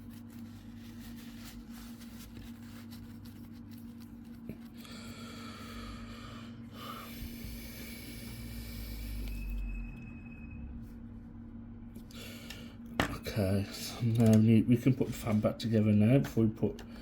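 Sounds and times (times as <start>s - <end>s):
faint handling sounds: 0.0s - 4.9s, 13.0s - 17.0s
low electrical hum: 0.0s - 17.0s.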